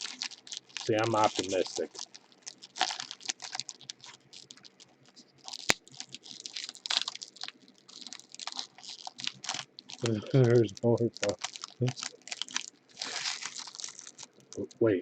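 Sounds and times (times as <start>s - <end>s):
cards clicking and rustling: 0.8s - 1.9s.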